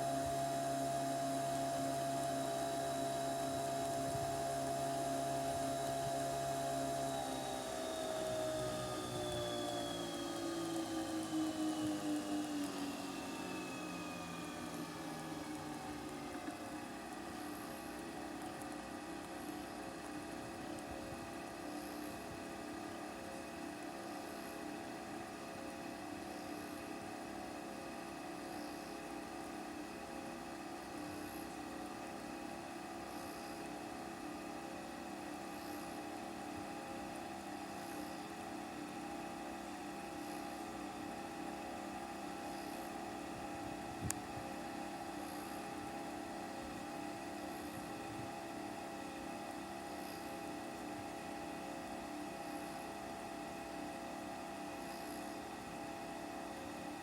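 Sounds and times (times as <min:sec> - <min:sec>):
steady machine hum: 0:00.0 - 0:57.0.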